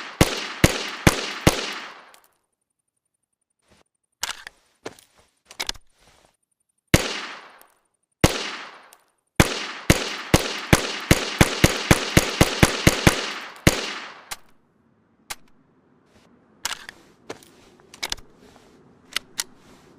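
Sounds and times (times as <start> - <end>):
rifle shots: 0.0 - 2.2, 6.9 - 7.6, 8.2 - 14.5
light rifle clicks: 13.1 - 14.6, 16.6 - 18.3.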